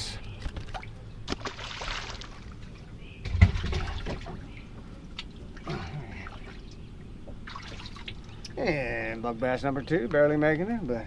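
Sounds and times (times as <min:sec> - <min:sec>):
water splashing and dripping: 0:00.4 - 0:08.6.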